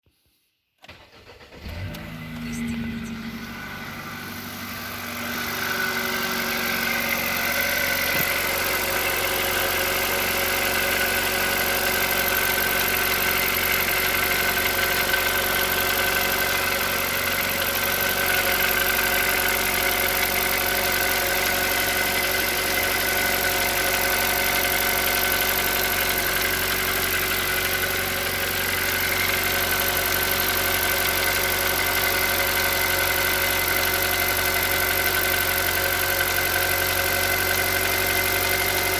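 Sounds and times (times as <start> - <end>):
car engine idling: 0.9 - 38.9.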